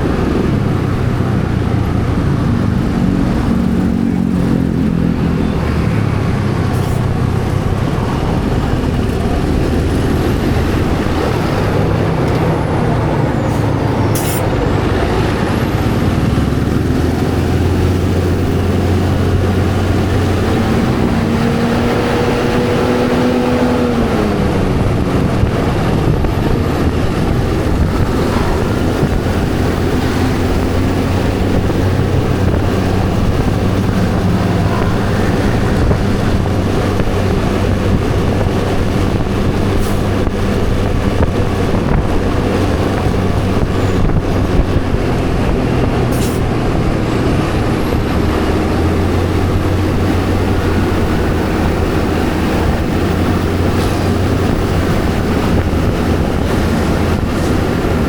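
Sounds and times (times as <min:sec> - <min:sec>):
road traffic noise: 0:00.0 - 0:58.0.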